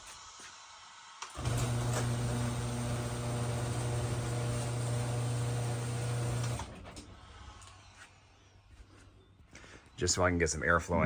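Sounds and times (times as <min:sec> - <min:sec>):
garage door opener motor: 0:01.3 - 0:07.8.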